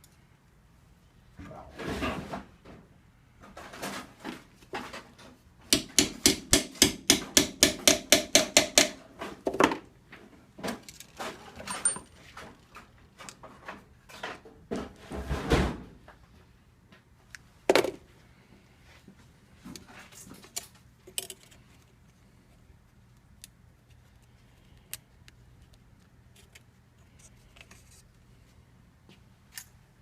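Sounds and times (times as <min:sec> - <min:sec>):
hammer tapping on metal: 0:05.7 - 0:09.0.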